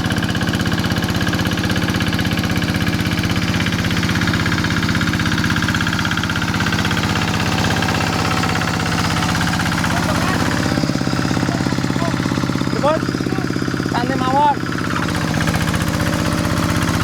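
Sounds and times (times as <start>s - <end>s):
diesel engine chugging: 0.0s - 17.0s.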